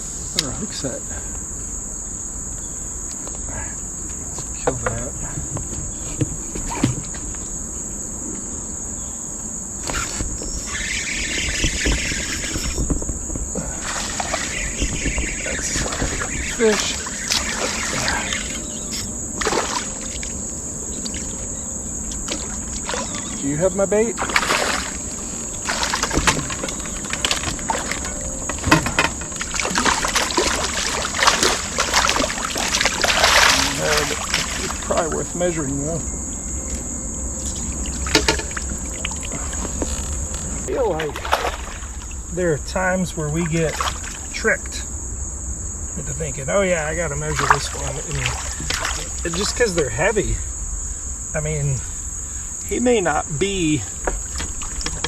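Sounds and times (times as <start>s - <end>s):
high-pitched insect drone: 0.0s - 55.0s
steady high-pitched hiss: 0.0s - 55.0s
water splashes: 9.9s - 21.5s, 22.1s - 36.0s, 37.4s - 42.5s, 43.2s - 44.6s, 46.5s - 50.4s, 52.7s - 55.0s
rush of hissing noise: 9.9s - 36.2s
small knocks: 25.6s - 35.1s, 36.7s - 41.8s, 54.0s - 55.0s
knocks and clicks: 25.8s - 30.0s, 38.1s - 40.0s.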